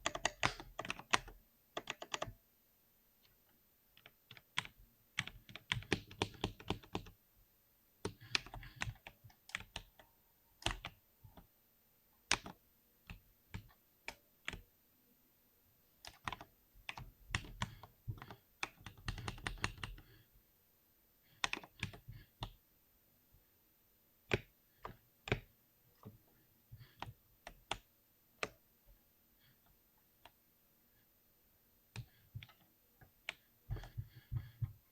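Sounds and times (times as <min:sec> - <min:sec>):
typing on computer keyboard: 0:00.0 - 0:02.4, 0:04.0 - 0:07.2, 0:08.0 - 0:11.5, 0:12.3 - 0:14.6, 0:16.0 - 0:20.1, 0:21.4 - 0:22.6, 0:31.9 - 0:34.8.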